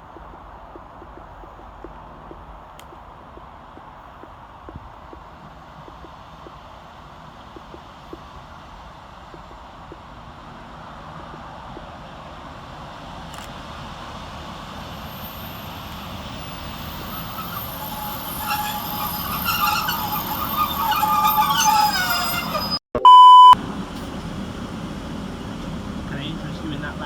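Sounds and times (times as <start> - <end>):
train arriving: 0.0 - 27.0
train brakes squealing: 13.6 - 22.8
loud electronic beep: 16.6 - 23.6.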